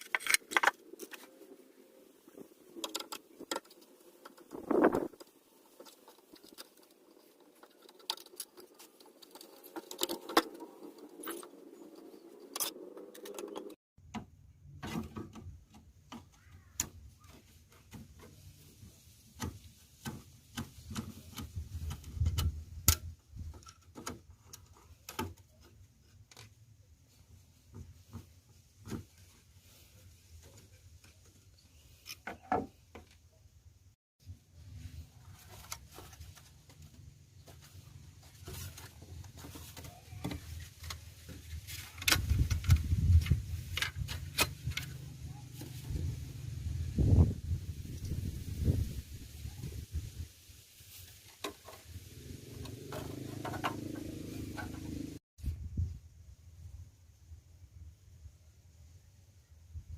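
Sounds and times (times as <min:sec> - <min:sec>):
tools clicking and scraping: 0:00.0 - 0:01.5, 0:02.3 - 0:13.8.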